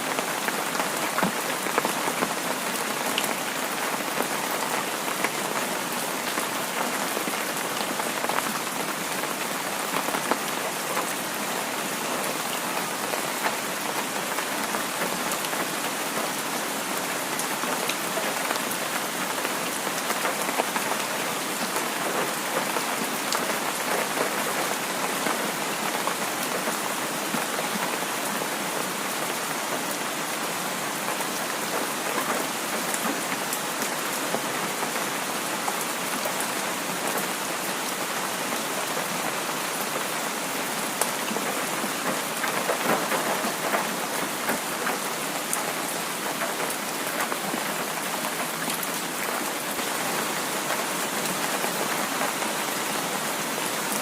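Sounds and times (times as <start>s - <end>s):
heavy rain: 0.0s - 54.0s.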